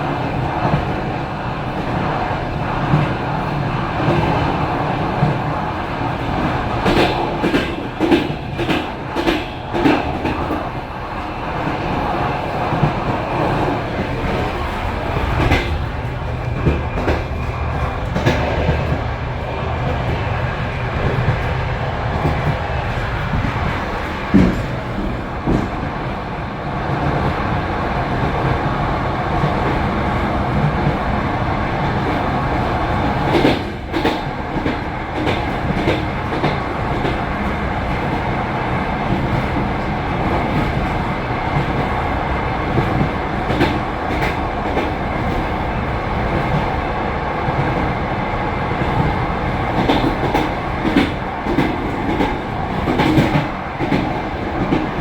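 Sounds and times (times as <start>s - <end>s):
train rumble: 0.0s - 55.0s
train wheels clattering over joints: 21.0s - 26.0s.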